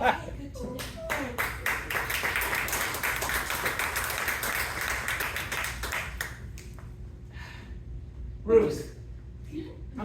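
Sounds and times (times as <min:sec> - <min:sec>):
audience applauding: 0:00.8 - 0:06.6.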